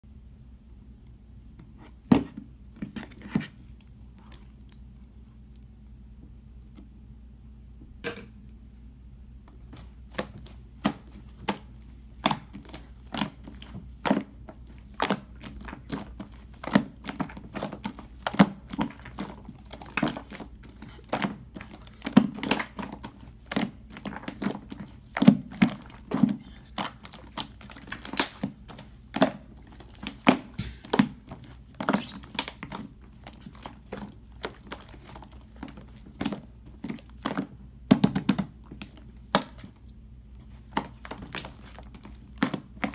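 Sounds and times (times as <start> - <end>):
slime squelching: 9.5 - 42.9
slime clicking and popping: 21.1 - 29.4.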